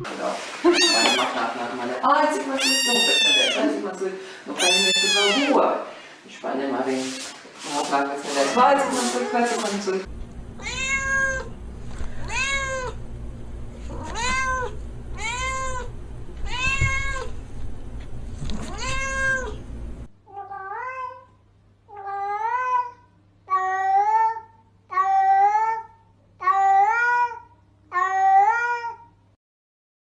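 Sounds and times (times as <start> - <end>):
cat meowing: 0.7 - 1.4, 2.6 - 3.7, 4.6 - 5.6, 8.3 - 9.7, 10.6 - 13.0, 13.9 - 17.4, 18.4 - 19.6, 20.3 - 21.3, 21.9 - 29.1.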